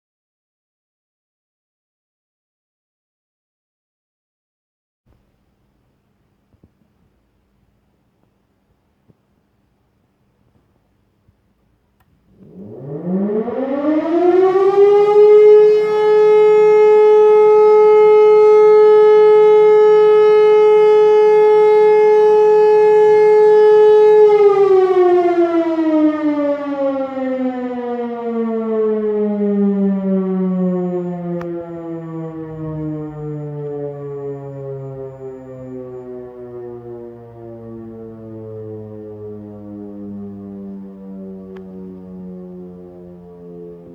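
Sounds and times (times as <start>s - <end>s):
civil defence siren wailing: 12.2s - 43.9s.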